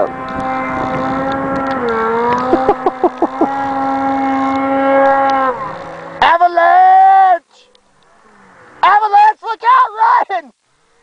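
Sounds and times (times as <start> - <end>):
snowmobile engine revving: 0.0 - 7.1.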